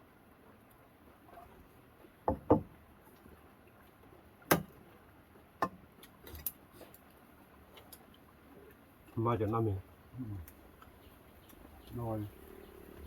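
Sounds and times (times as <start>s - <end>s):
sharp knocks: 2.3s - 2.7s.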